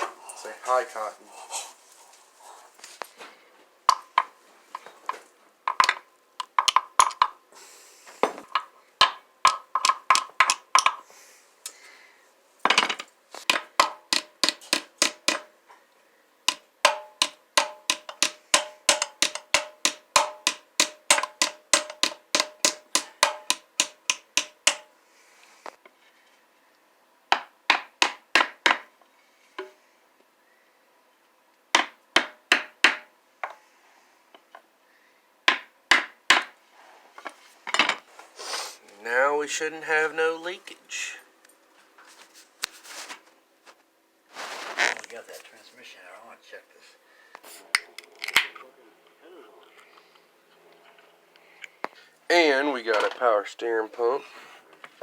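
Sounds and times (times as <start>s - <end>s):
hammer striking metal: 13.5s - 15.5s, 16.5s - 24.9s.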